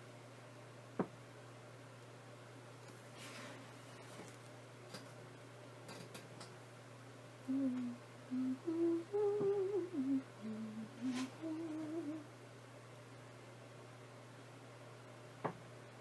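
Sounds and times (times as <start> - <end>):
faint low hum: 0.0 - 16.0
woman humming a tune: 7.4 - 12.3.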